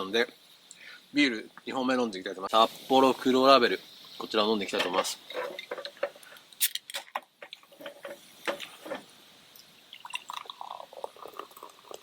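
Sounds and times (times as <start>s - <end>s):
beer glugging and fizzing: 7.4s - 12.0s.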